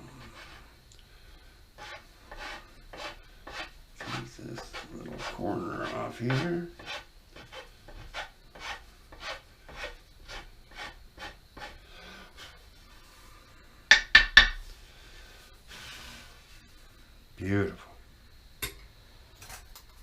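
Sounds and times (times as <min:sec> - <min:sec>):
hand tool scraping wood: 0:00.2 - 0:00.6, 0:01.8 - 0:12.6.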